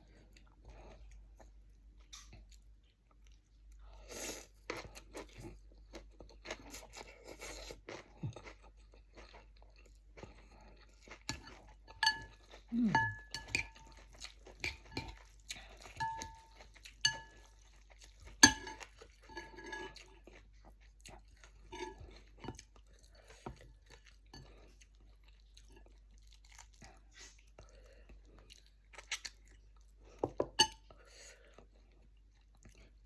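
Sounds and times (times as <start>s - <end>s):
chewing and crunching: 0.0s - 33.0s
utensil clinking against bowl: 11.3s - 14.0s, 16.0s - 17.4s, 18.4s - 20.0s.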